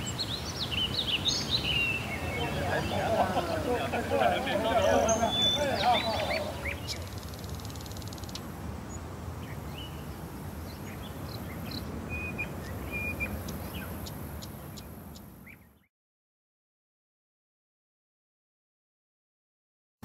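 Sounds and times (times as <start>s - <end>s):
whistled bird calls: 4.6s - 8.4s
bird chirps: 4.7s - 10.1s, 10.7s - 15.9s.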